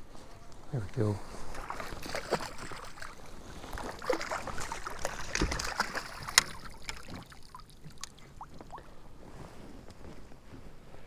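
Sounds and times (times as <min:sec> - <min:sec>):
water splashing and sloshing: 0:00.1 - 0:10.3.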